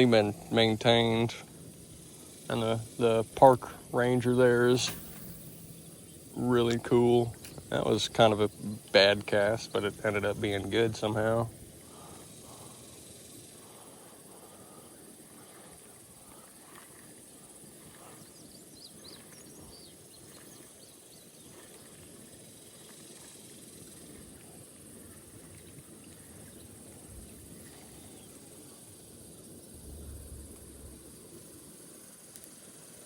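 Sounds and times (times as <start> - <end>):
steady low hiss: 0.0 - 33.0
low rumble: 29.6 - 31.6.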